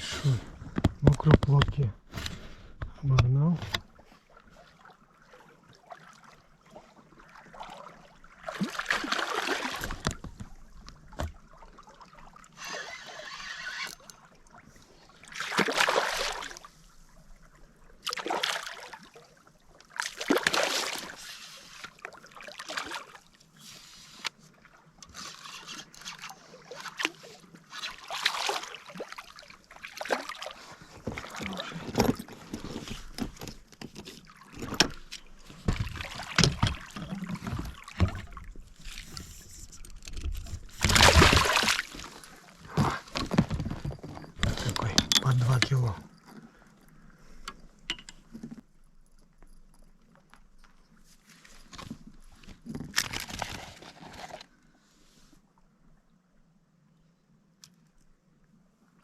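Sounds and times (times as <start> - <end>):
water splashing against boat: 0.0 - 16.8, 17.4 - 46.6.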